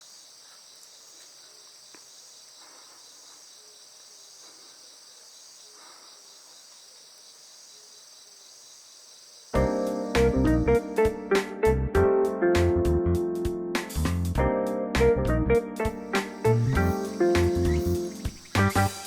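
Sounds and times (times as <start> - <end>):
insects chirring: 0.0 - 11.4, 15.9 - 19.0.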